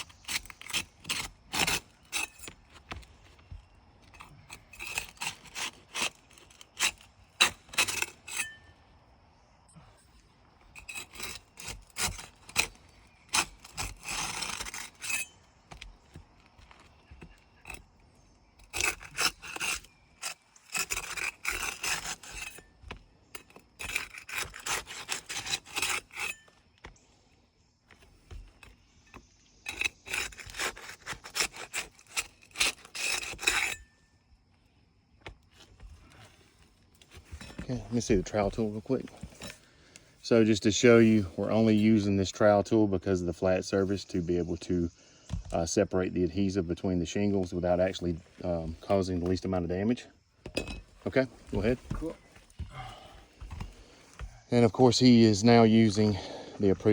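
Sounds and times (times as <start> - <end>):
tool scraping roof shingles: 0.0 - 8.7, 10.7 - 18.0, 18.6 - 27.0, 27.9 - 33.9, 35.2 - 42.4.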